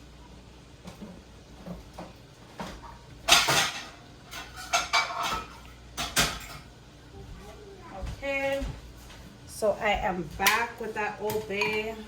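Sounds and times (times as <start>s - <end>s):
dishes clattering: 1.6s - 6.7s, 11.4s - 12.0s.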